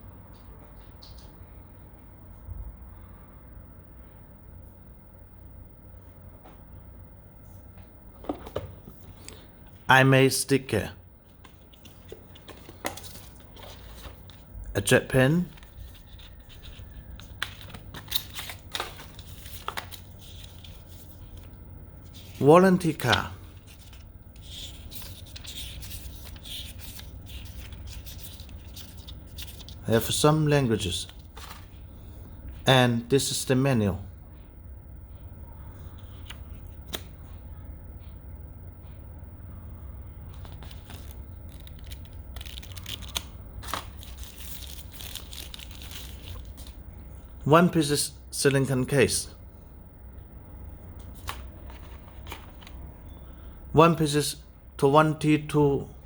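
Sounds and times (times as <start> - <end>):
faint low hum: 0.0 - 56.0
packaging crinkling and rustling: 11.3 - 14.6, 15.4 - 22.4, 23.0 - 30.2, 30.8 - 31.9, 40.3 - 47.0, 51.0 - 53.2
paper and box parts handled: 11.4 - 14.6, 15.3 - 30.2, 31.0 - 31.8, 40.3 - 46.8, 51.0 - 52.9.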